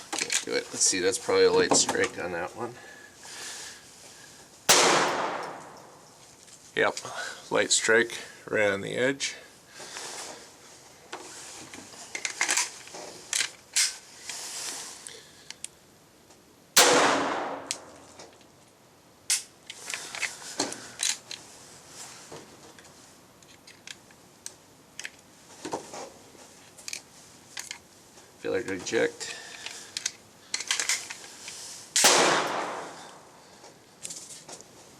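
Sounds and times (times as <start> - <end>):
loud gunshot: 4.7 - 5.9, 16.8 - 18.0, 32.0 - 33.1
pistol clicking and clacking: 16.8 - 18.1.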